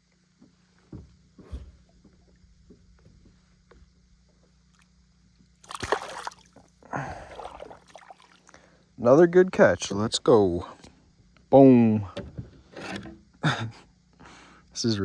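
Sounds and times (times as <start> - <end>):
water splashing and sloshing: 4.3 - 8.8.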